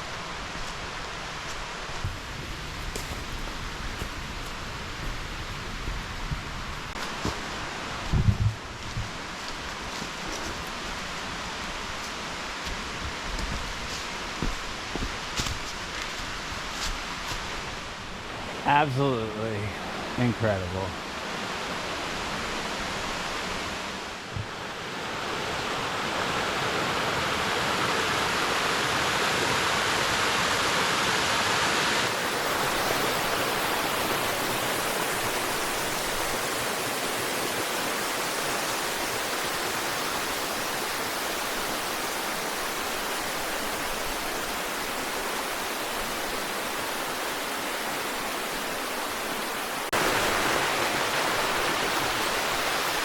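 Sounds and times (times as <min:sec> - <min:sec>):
waterfall rushing onto rock: 0:02.0 - 0:08.2.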